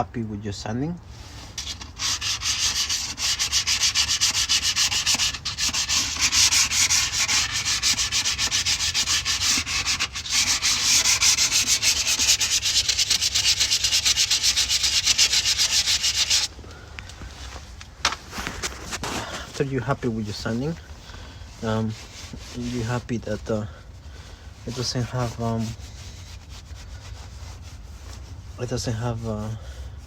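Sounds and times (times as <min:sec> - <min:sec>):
sandpaper rubbing on metal: 0:01.3 - 0:16.5, 0:21.5 - 0:23.7, 0:24.6 - 0:29.7.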